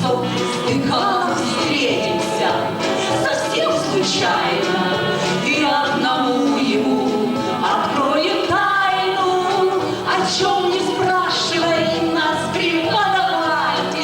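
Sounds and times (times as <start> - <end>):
group of voices singing: 0.0 - 14.0
musical accompaniment: 0.0 - 14.0.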